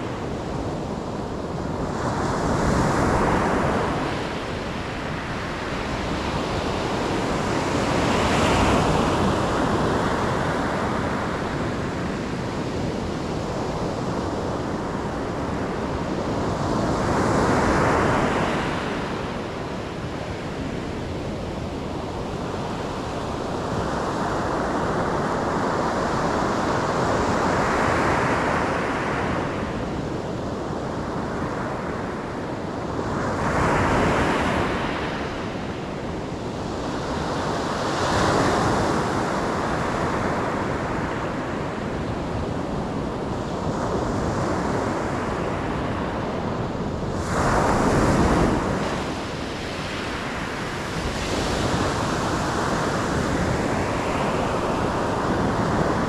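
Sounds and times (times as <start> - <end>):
waves breaking on shore: 30.9 - 56.0.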